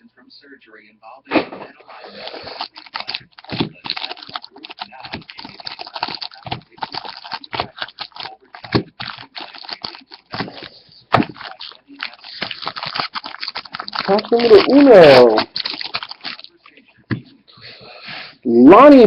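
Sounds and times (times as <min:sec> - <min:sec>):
plastic wrapping crinkling and tearing: 0:01.9 - 0:16.8.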